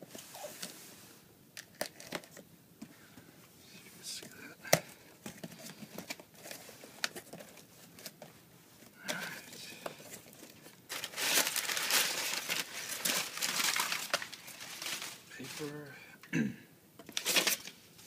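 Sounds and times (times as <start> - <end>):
packing paper crinkling: 9.0 - 15.9, 17.1 - 17.8.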